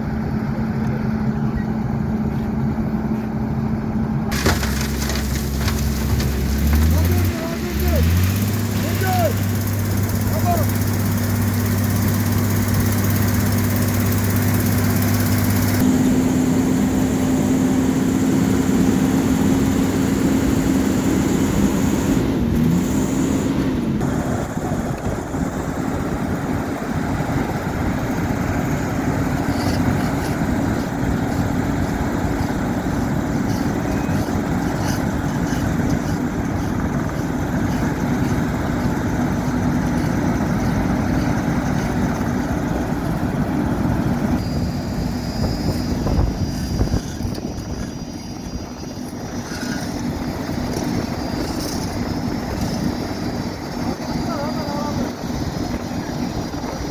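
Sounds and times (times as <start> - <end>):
diesel engines droning: 0.0 - 56.9.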